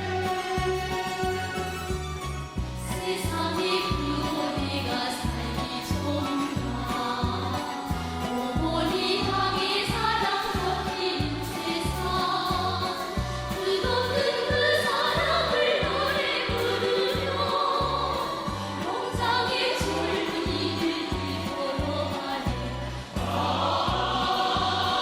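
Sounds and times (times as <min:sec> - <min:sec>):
chorus singing pop music: 0:00.0 - 0:25.0
steady bass beat: 0:19.2 - 0:25.0.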